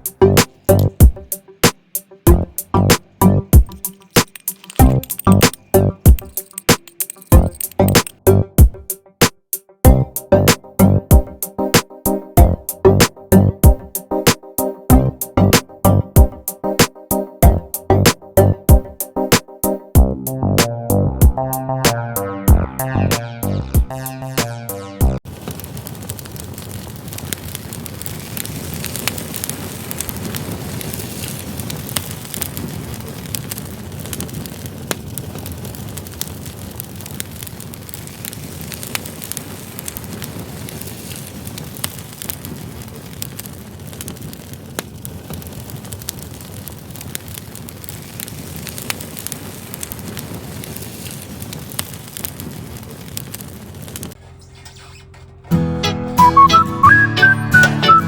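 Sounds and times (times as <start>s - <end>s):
firewood crackling: 0.0s - 9.0s, 9.9s - 23.0s, 25.2s - 58.0s
wood fire rushing in stove: 3.5s - 8.2s, 25.3s - 54.5s.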